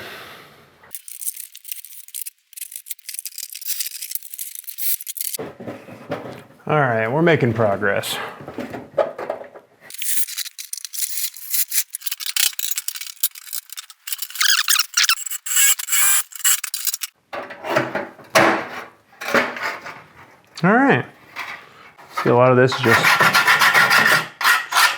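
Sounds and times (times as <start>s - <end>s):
metal scraping and squealing: 9.9s - 17.1s.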